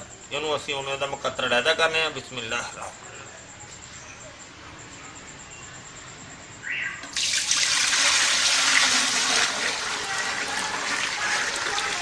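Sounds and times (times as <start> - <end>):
liquid pouring: 7.1 - 12.0.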